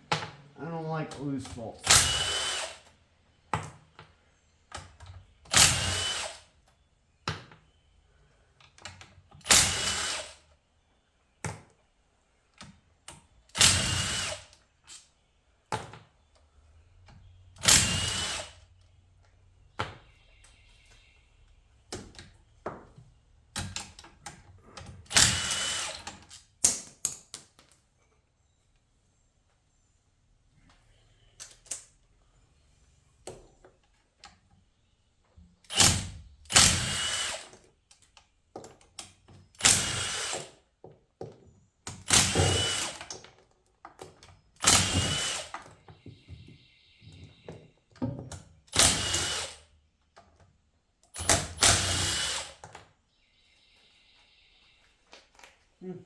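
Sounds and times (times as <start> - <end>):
cordless power tool spinning bolts: 1.6 - 2.9, 5.5 - 6.5, 9.4 - 10.4, 13.5 - 15.0, 17.3 - 18.6, 25.0 - 26.3, 35.7 - 37.7, 39.5 - 40.6, 41.9 - 43.3, 44.6 - 45.9, 48.7 - 49.7, 51.1 - 52.8.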